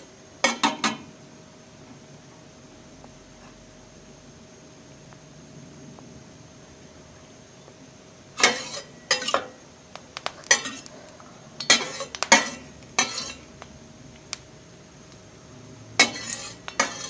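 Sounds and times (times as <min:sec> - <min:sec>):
utensils clattering against a pan: 0:08.4 - 0:09.5, 0:10.4 - 0:10.9, 0:11.6 - 0:13.5, 0:16.0 - 0:17.0.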